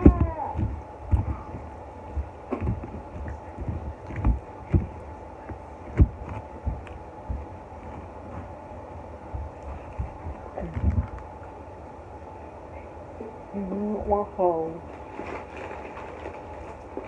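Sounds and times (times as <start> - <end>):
soft low thumps: 0.0 - 11.4
faint steady hum: 0.0 - 17.0.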